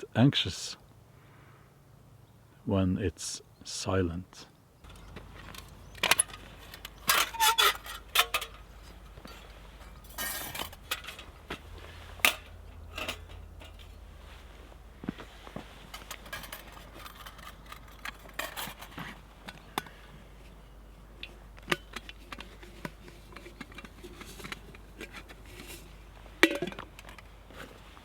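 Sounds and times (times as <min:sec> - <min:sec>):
small clicks and knocks: 0:21.2 - 0:25.4.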